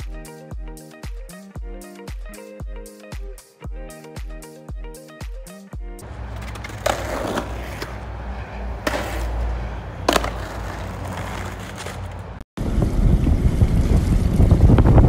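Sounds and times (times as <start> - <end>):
skateboard clacks: 6.0 - 12.4
skateboard wheels rolling on pavement: 6.0 - 15.0.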